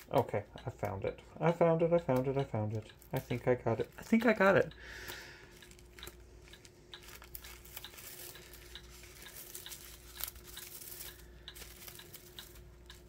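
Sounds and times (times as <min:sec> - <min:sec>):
faint steady hum: 0:00.0 - 0:13.0
light clicks and ticks: 0:00.0 - 0:13.0
package wrapping rustling: 0:05.0 - 0:13.0.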